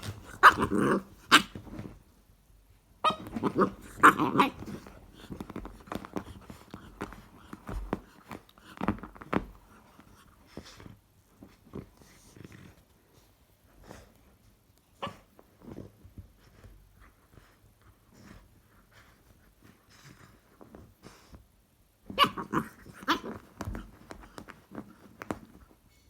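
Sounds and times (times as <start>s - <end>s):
puppy growling in play: 0.0s - 2.0s, 3.1s - 8.8s, 22.1s - 25.6s.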